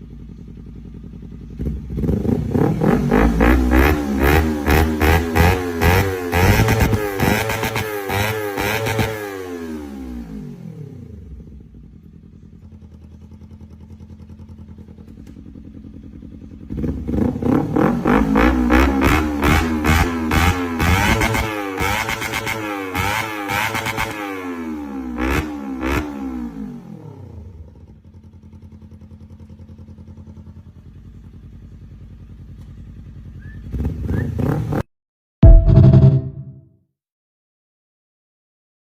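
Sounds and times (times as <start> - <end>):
motorcycle engine idling: 0.0 - 3.4, 9.9 - 17.5, 27.1 - 34.1
motorcycle engine idling and revving: 0.0 - 36.3
loud rhythmic beating sound: 35.4 - 36.6.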